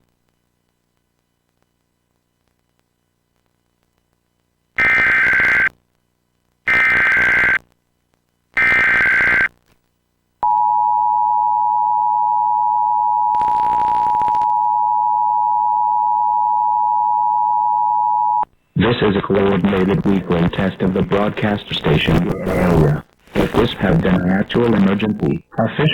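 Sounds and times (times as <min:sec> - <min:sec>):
crackle of noise: 0:00.0 - 0:10.4, 0:13.2 - 0:14.8, 0:18.4 - 0:25.9.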